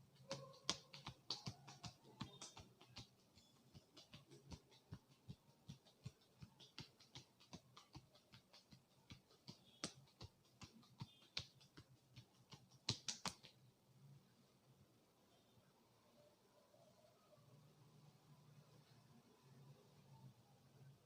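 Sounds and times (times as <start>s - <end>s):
hands tapping on a head: 0.0s - 13.6s.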